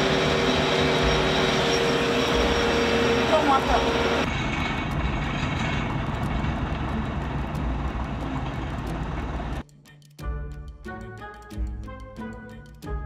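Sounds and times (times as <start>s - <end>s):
tractor engine running: 0.0s - 9.6s
music with clear notes: 7.0s - 13.0s.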